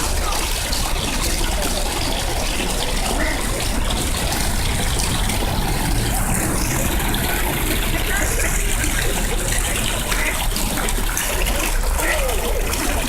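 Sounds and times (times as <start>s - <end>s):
running water splashing: 0.0s - 13.0s.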